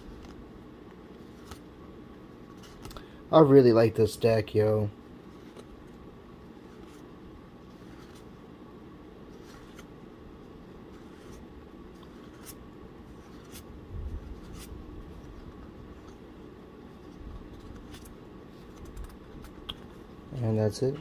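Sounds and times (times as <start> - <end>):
cards being flipped: 0.0 - 1.7, 2.5 - 3.0, 5.4 - 6.0, 6.6 - 8.4, 9.3 - 9.9, 10.9 - 16.2, 17.0 - 20.0
low room hum: 0.0 - 21.0.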